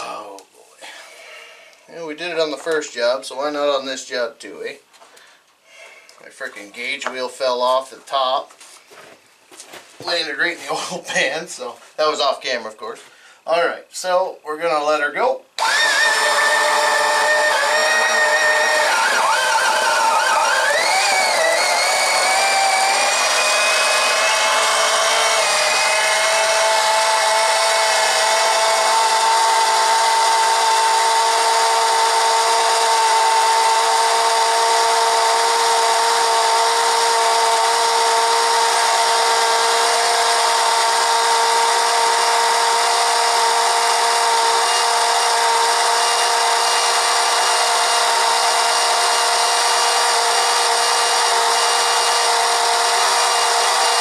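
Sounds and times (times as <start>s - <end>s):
electric pump motor whine: 15.6s - 54.0s.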